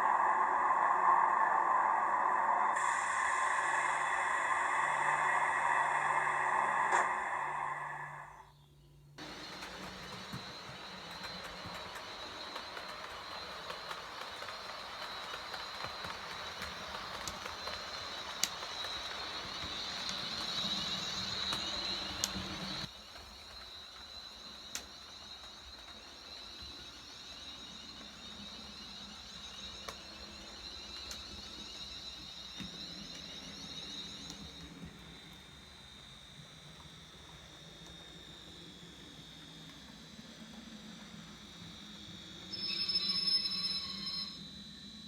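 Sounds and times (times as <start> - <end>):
rough hiss: 0.0 - 8.4.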